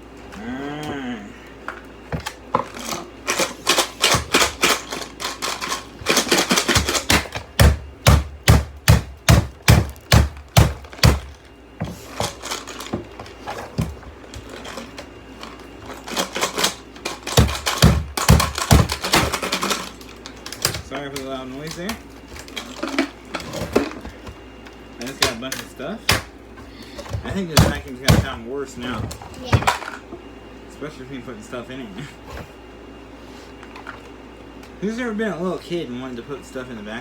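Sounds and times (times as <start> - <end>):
screws and bolts rattling in plastic: 2.6 - 7.7, 9.2 - 24.0.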